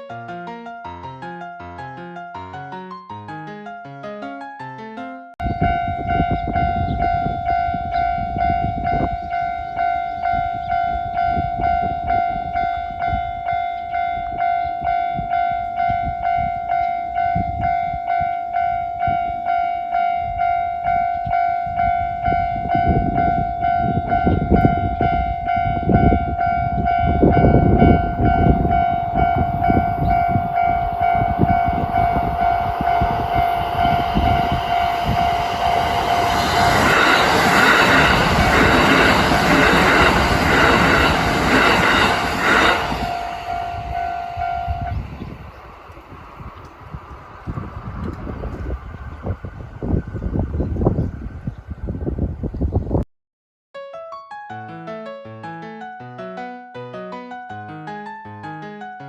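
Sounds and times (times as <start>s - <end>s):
level-crossing warning bell: 5.4s - 46.2s
train rumbling: 5.4s - 53.0s.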